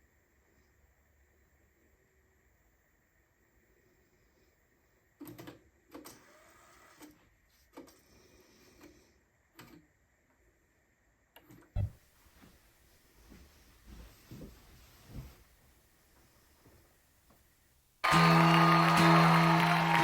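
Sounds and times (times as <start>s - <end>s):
deep thump: 11.8s - 12.0s.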